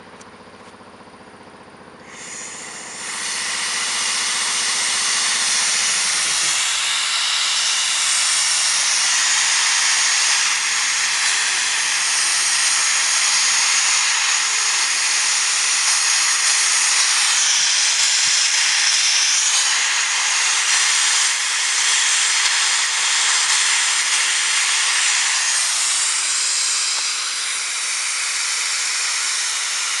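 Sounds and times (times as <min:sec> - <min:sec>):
low hum: 0:00.0 - 0:11.2
compressed air hissing: 0:02.0 - 0:30.0.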